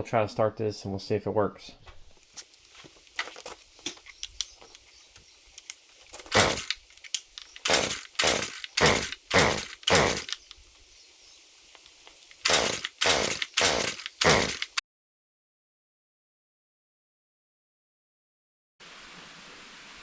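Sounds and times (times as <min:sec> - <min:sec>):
recoil pull-starter whirring: 0:05.6 - 0:10.6, 0:11.8 - 0:14.8.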